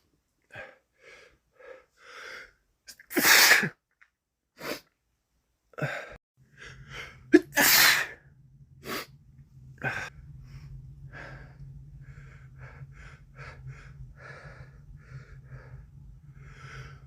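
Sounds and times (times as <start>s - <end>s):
man sneezing loudly: 2.9s - 3.8s, 7.4s - 8.1s.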